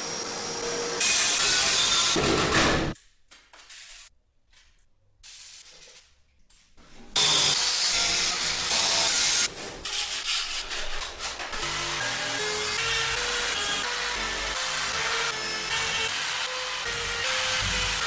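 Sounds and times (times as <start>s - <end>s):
sanding rust off metal: 7.2s - 12.7s.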